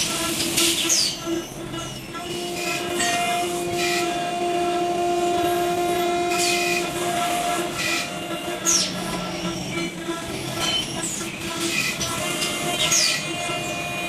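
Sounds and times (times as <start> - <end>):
drilling machine motor whine: 0.0 - 14.0.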